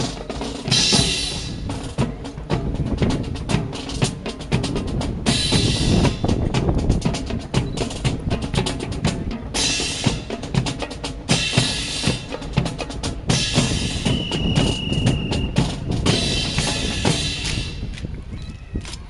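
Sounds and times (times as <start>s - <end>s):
hissing noise bursts: 5.3s - 7.0s, 9.6s - 18.1s.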